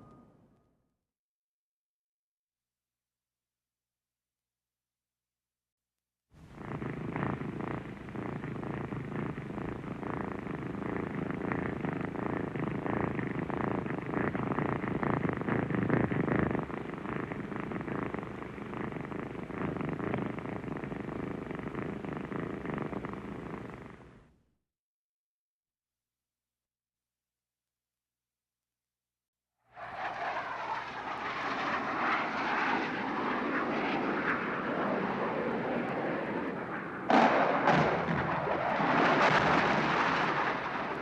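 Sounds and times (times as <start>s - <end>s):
airplane engine rumble: 29.8s - 41.0s.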